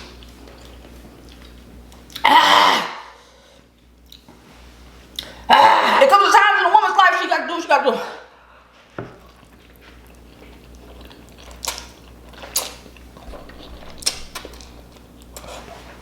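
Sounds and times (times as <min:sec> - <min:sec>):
soft chewing: 0:00.0 - 0:02.2, 0:03.6 - 0:05.4, 0:08.8 - 0:16.0.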